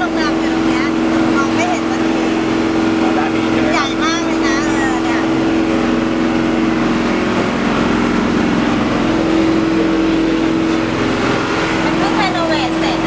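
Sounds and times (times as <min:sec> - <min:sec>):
boat engine droning: 0:00.0 - 0:13.0.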